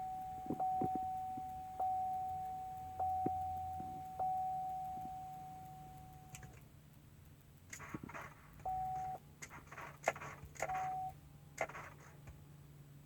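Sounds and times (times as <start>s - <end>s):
dashboard warning beeps: 0.0s - 6.5s, 8.7s - 9.2s, 10.6s - 11.2s
clicks: 0.4s - 6.7s
rustling: 7.7s - 12.4s.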